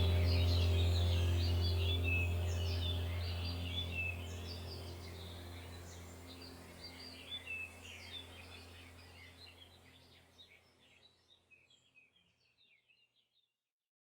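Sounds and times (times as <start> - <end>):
low steady hum: 0.0 - 10.4.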